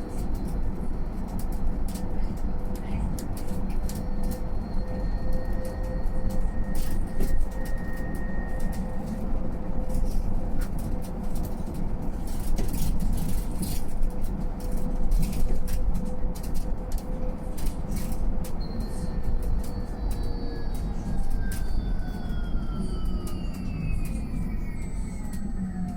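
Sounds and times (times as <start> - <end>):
road rumble inside bus: 0.0 - 25.9
rattles and clicks: 9.9 - 21.7.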